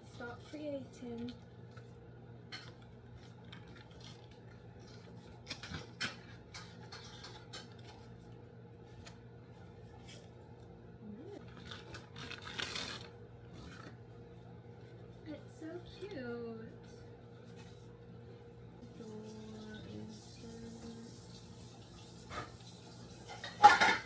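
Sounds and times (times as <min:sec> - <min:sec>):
packaging rustle: 0:02.6 - 0:08.2, 0:11.4 - 0:14.0
packaging clicks and scrapes: 0:11.4 - 0:14.0.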